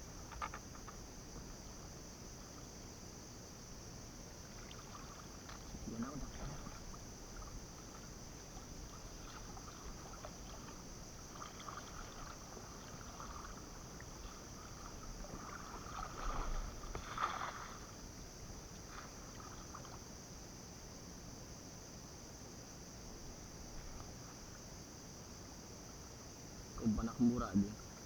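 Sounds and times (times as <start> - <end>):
shallow water sloshing and splashing: 3.7 - 20.3.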